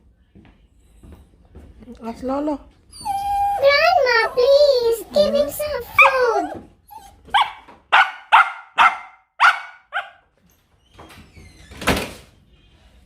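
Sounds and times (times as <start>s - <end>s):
dog barking: 7.3s - 10.3s.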